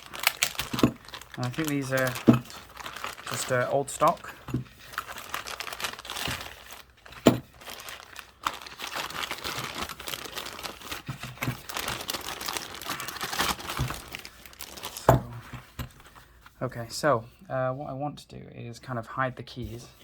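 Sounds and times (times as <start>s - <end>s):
packaging crinkling and tearing: 0.0s - 15.2s.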